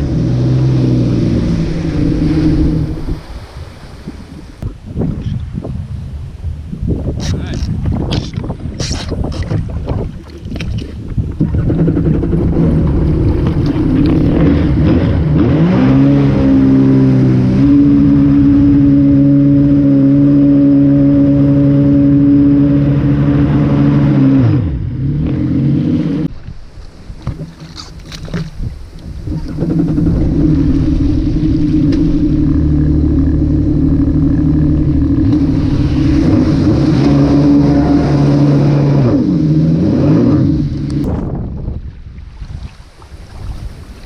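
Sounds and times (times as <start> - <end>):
jet ski engine whining: 0.0 - 4.6, 11.0 - 26.3, 27.3 - 41.1.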